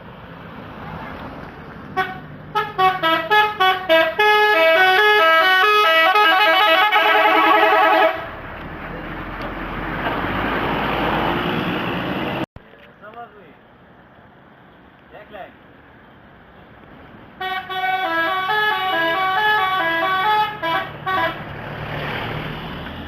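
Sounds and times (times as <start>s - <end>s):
bus engine and road noise: 0.0s - 23.0s
musical air horn tune: 2.0s - 8.3s, 17.4s - 21.4s.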